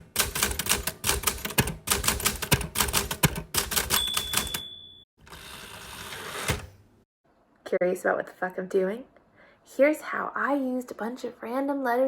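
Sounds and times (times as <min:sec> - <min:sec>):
typewriter keys striking: 0:00.1 - 0:04.6
typewriter bell ring: 0:03.7 - 0:05.1.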